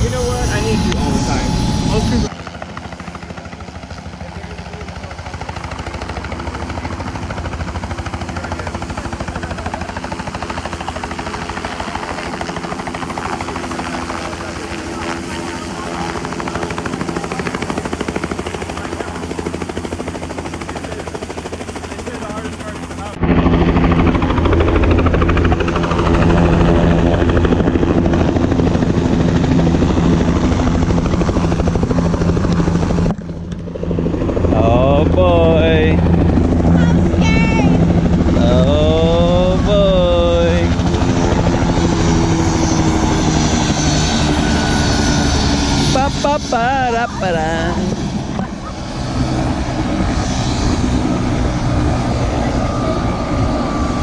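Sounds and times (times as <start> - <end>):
helicopter engine and rotor: 0.0 - 54.0.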